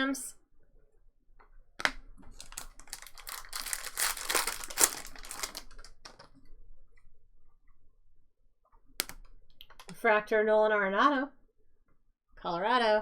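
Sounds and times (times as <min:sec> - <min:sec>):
cards clicking and rustling: 0:01.8 - 0:06.3.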